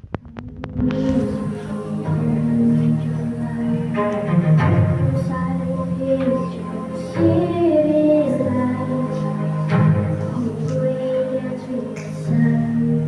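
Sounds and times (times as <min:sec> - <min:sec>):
singing voices: 0:00.0 - 0:13.0.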